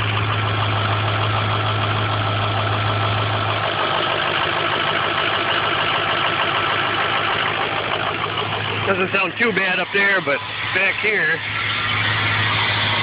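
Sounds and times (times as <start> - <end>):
diesel engine idling: 0.0 - 13.0.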